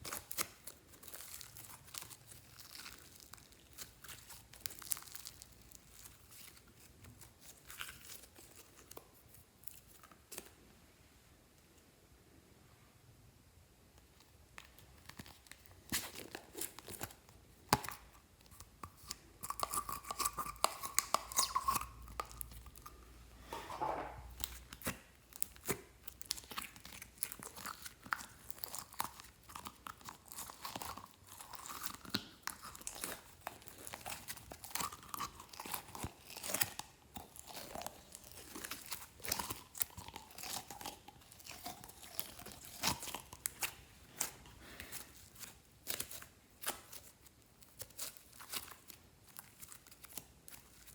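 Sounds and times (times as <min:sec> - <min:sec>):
squeaky slime squelches: 0:19.0 - 0:22.9.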